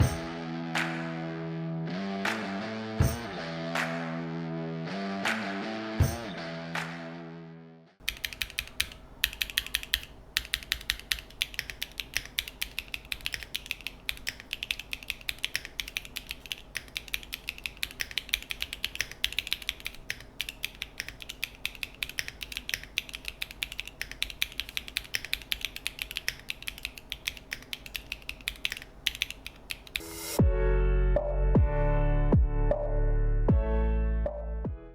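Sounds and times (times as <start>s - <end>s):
mechanical keyboard typing: 8.0s - 30.0s.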